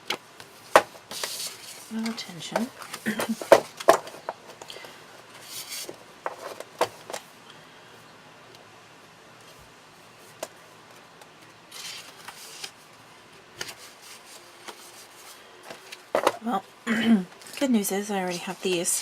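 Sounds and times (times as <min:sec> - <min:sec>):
paper rustling: 0:00.4 - 0:04.3, 0:11.7 - 0:12.8, 0:13.6 - 0:16.4.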